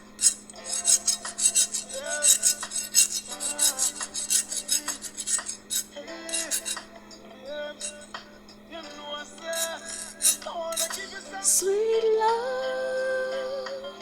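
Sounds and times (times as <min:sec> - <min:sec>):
hand saw scraped rhythmically: 0:00.0 - 0:07.0, 0:07.8 - 0:08.1, 0:09.4 - 0:11.2
backing music: 0:00.0 - 0:14.0.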